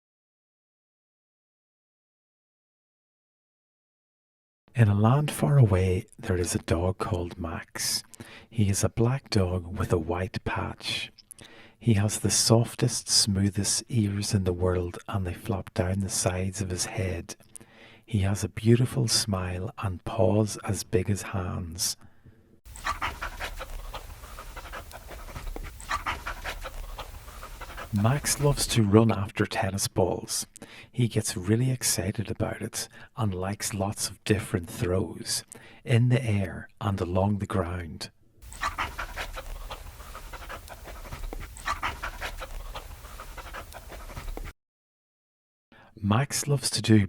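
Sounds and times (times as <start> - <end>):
dog panting: 22.7 - 28.8, 38.4 - 44.5.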